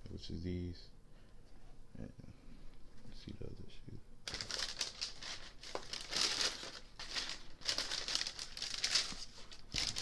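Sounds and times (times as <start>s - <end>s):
tissue paper crinkling and rustling: 4.3s - 10.0s.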